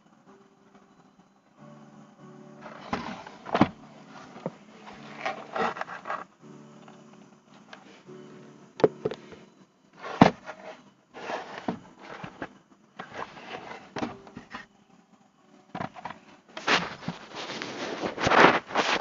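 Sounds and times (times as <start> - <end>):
scraping and rustling: 2.6 - 6.3, 10.0 - 14.7, 15.8 - 19.0
plastic packaging crinkling: 16.6 - 19.0.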